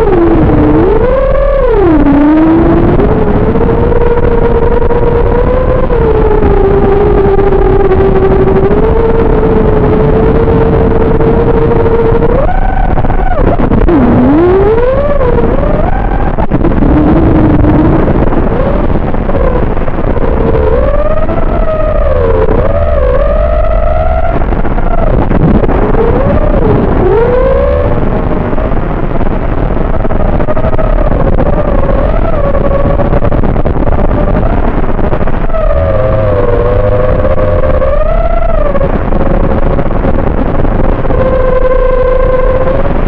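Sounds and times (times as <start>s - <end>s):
quadcopter motors whining: 0.0s - 28.3s, 35.5s - 38.9s
wind noise: 0.0s - 43.0s.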